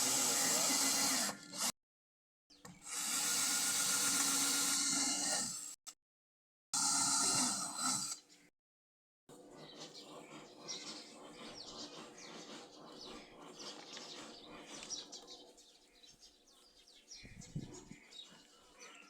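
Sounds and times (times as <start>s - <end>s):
small birds chirping: 9.3s - 19.0s.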